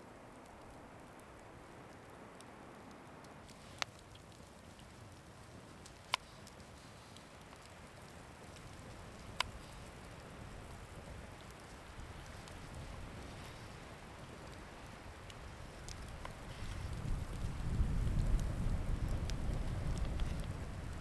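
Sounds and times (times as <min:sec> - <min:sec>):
wind blowing: 0:08.6 - 0:21.0.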